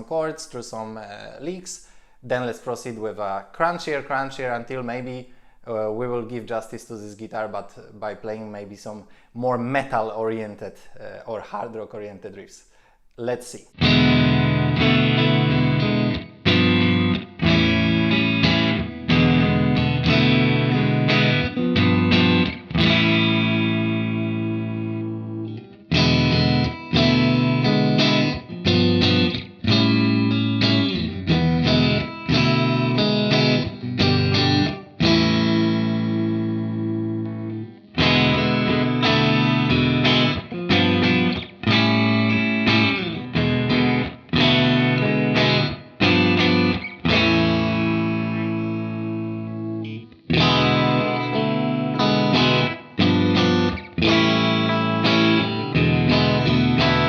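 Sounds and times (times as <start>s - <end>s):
clean electric guitar strumming: 13.7s - 57.0s.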